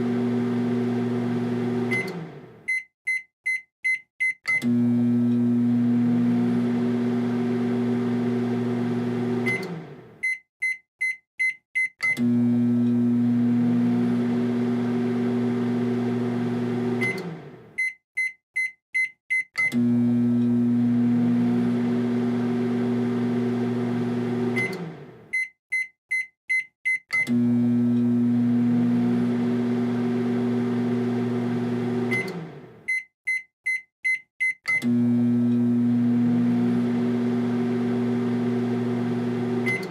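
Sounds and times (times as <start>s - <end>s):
microwave oven humming: 0.0s - 2.6s, 4.6s - 10.2s, 12.2s - 17.7s, 19.7s - 25.3s, 27.3s - 32.8s, 34.8s - 39.9s
high microwave beeps: 1.9s - 4.7s, 32.0s - 34.9s, 39.6s - 39.9s.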